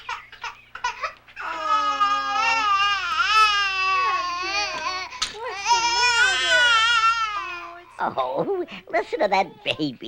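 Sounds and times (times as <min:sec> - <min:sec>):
baby crying: 0:00.0 - 0:08.0.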